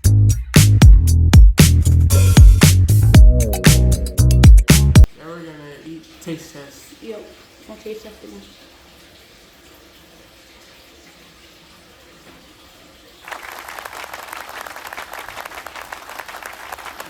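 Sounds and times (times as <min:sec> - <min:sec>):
group applauding: 0:13.2 - 0:17.0.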